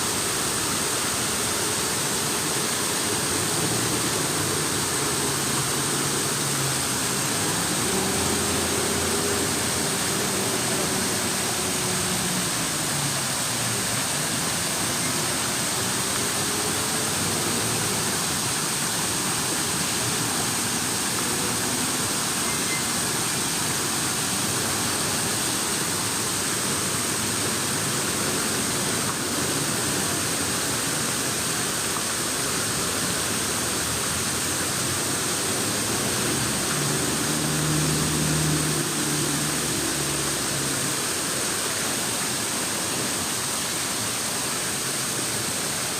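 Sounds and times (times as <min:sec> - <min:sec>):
flowing falling water: 0:00.0 - 0:45.9.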